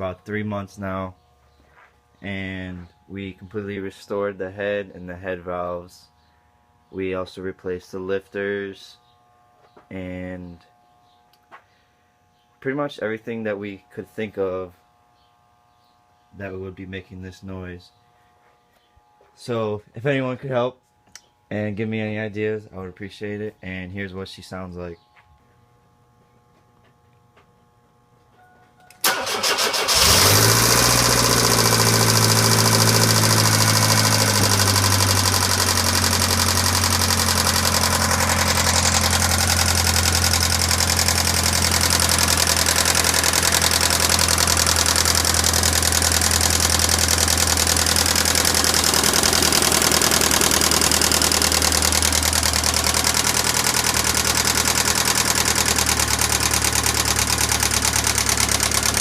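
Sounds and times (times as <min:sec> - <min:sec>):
car engine starting and idling: 0:29.0 - 0:59.0
engine ticking noise: 0:31.3 - 0:59.0.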